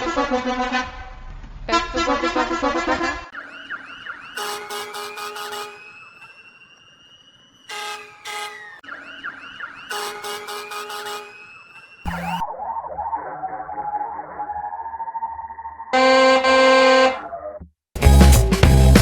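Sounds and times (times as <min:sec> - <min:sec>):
pulsing truck horn blasts: 0:00.0 - 0:01.1, 0:04.4 - 0:06.2, 0:07.7 - 0:08.8, 0:09.9 - 0:11.6, 0:15.9 - 0:17.2
siren yelps and wail: 0:03.3 - 0:17.6.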